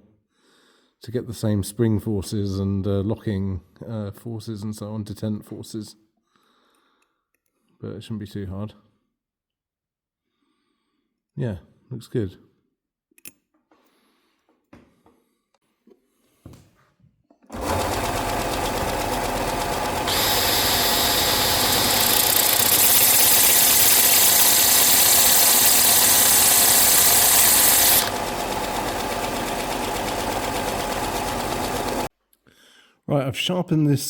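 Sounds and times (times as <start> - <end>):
electric power tool running: 17.5 - 32.1
tool grinding against metal: 17.6 - 32.1.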